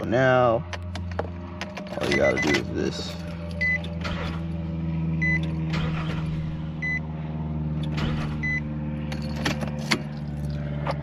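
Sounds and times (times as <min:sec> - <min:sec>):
car engine running: 0:00.0 - 0:11.0
dashboard warning chime: 0:02.0 - 0:04.0.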